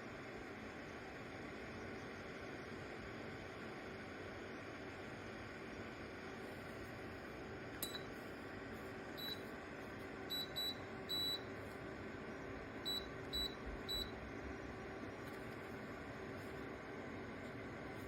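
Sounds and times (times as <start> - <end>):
heater fan whir: 0.0 - 18.0
short high beeps: 10.3 - 11.4.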